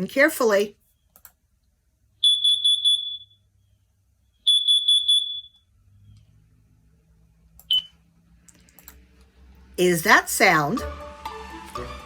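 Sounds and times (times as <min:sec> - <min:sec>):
carbon monoxide alarm beeps: 0:02.2 - 0:03.5, 0:04.4 - 0:05.7, 0:07.7 - 0:08.0.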